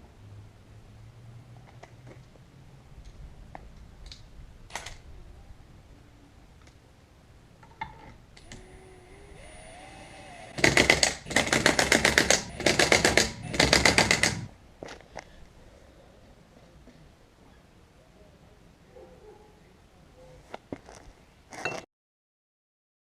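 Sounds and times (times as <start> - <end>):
impact wrench hammering: 10.5 - 14.5.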